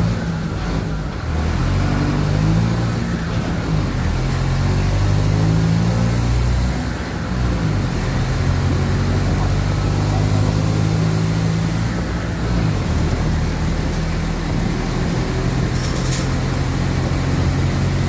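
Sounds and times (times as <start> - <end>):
bus diesel engine under load: 0.0 - 18.0.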